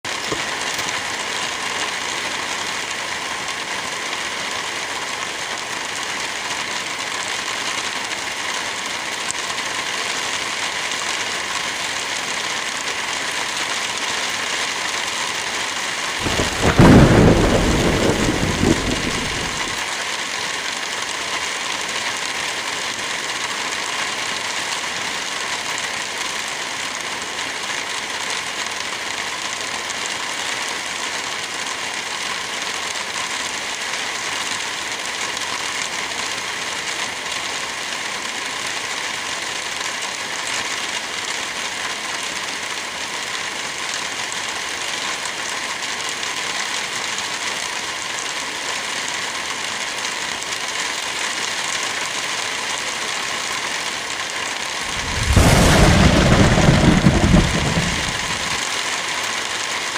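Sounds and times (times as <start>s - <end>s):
steady rain falling: 0.1s - 59.9s
thunderclap cracking and rolling: 16.2s - 19.8s, 54.9s - 58.6s.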